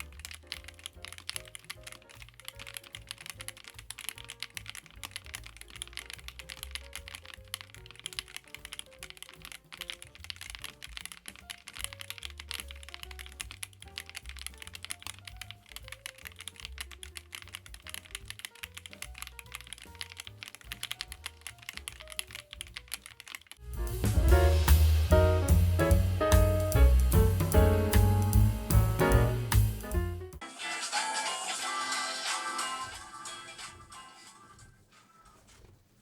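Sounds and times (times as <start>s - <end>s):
mechanical keyboard typing: 0.0s - 23.6s
soft background music: 0.0s - 34.4s.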